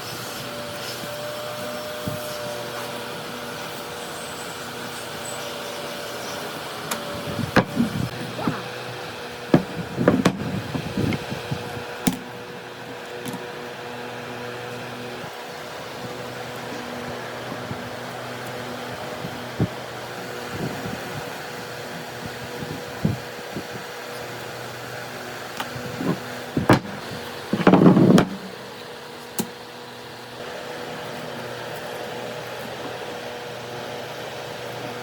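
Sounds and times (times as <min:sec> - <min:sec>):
steady motor hum: 0:00.0 - 0:35.0
sharp knocks and clatters: 0:26.6 - 0:28.6.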